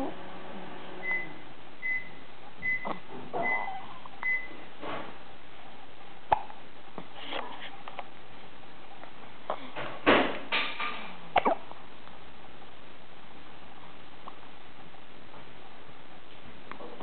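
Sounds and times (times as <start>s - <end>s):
soft hiccups: 11.3s - 11.7s.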